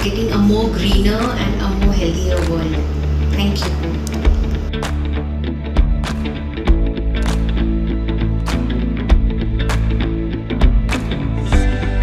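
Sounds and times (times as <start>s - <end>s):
bass and guitar chords: 0.0s - 12.0s
steady drum beat: 0.8s - 2.7s, 4.2s - 5.0s, 9.1s - 9.6s.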